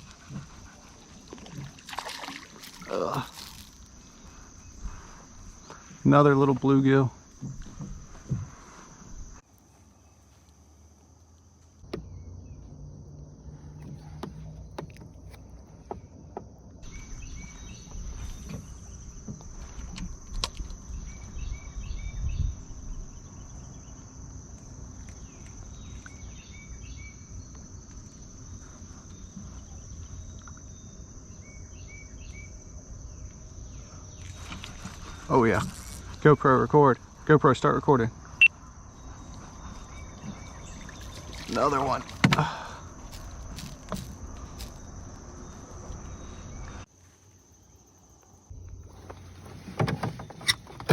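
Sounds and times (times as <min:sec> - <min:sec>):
insect chirps: 0:00.0 - 0:50.9
insects buzzing: 0:00.0 - 0:50.9
handling clicks and knocks: 0:13.8 - 0:16.8, 0:49.0 - 0:50.9.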